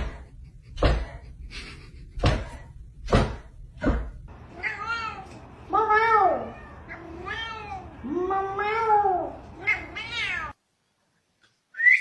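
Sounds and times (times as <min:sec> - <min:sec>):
cat meowing: 0:04.5 - 0:10.6.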